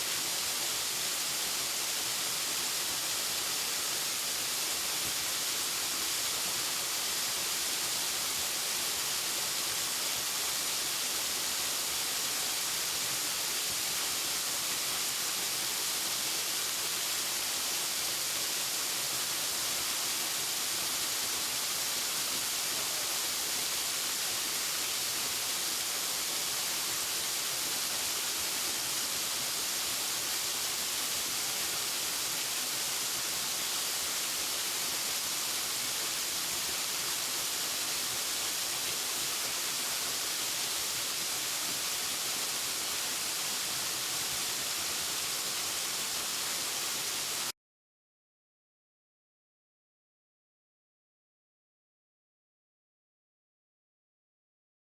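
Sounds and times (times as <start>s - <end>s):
waterfall rushing: 16.8s - 47.5s.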